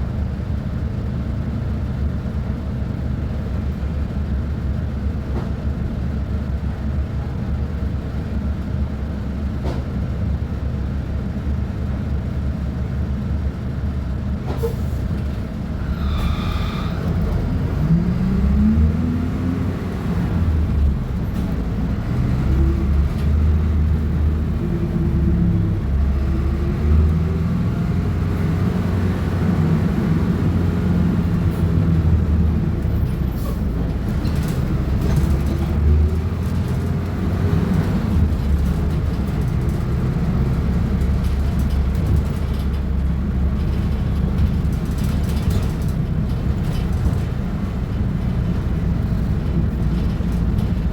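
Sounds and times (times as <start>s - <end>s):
bus diesel engine revving: 14.6s - 43.5s.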